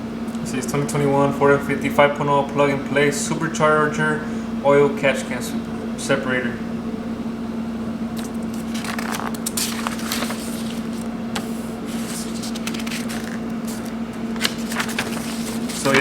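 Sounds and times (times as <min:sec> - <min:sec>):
steady low hum: 0:00.0 - 0:16.0
paper rustling and crinkling: 0:08.2 - 0:16.0.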